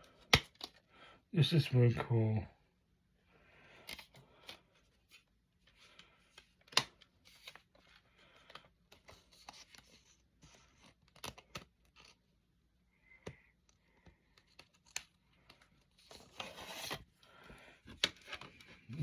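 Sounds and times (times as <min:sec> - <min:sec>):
plastic cases clicking and rustling: 0:17.8 - 0:19.0.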